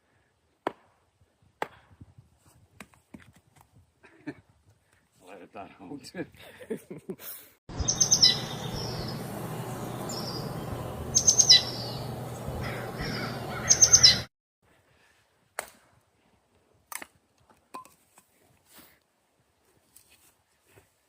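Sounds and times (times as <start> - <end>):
steady outdoor hiss: 6.1 - 14.2
songbird chirping: 7.7 - 14.3.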